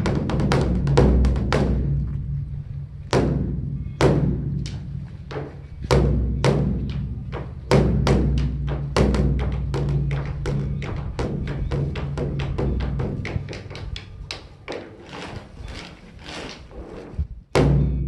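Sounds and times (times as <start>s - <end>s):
large drum being beaten: 0.0s - 14.0s, 17.5s - 18.0s.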